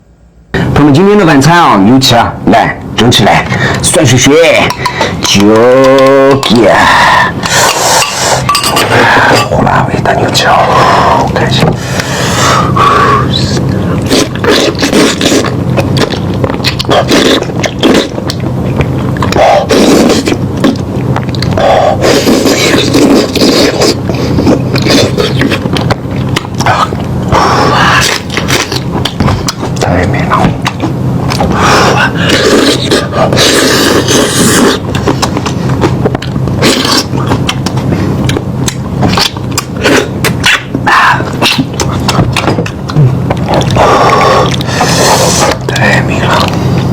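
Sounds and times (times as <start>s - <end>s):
steady low hum: 0.0s - 46.9s
person chewing and tearing meat: 13.6s - 19.4s, 22.6s - 29.9s, 30.6s - 46.9s.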